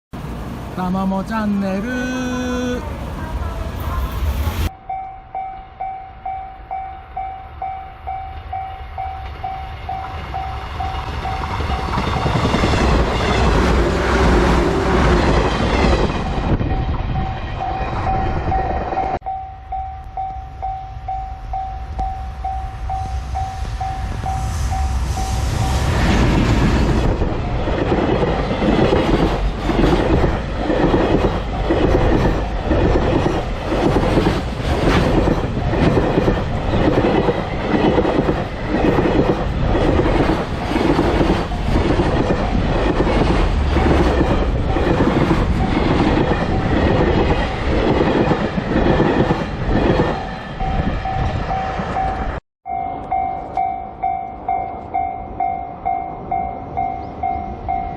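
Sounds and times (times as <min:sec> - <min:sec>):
train passing with rail noise: 0:00.1 - 0:57.9
level crossing warning bell: 0:04.6 - 0:12.1, 0:16.3 - 0:25.3, 0:50.3 - 0:57.9.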